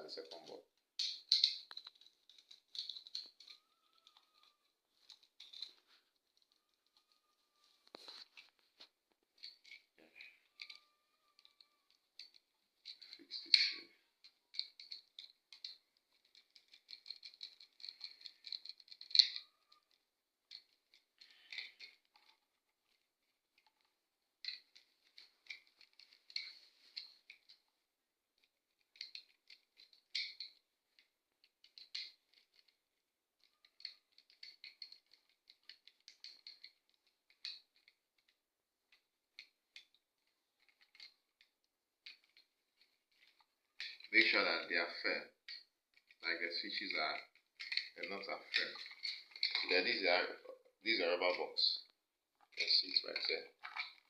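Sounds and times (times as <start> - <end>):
screwdriver ticking and scraping: 0.3 - 27.7.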